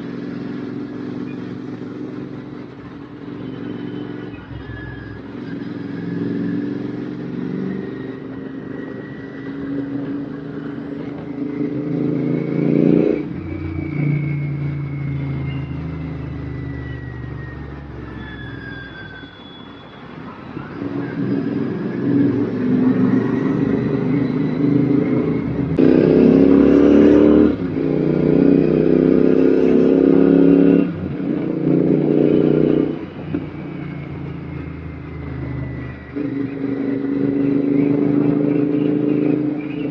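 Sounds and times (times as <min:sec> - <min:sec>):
motorcycle engine accelerating: 0:05.3 - 0:17.1, 0:20.7 - 0:39.9.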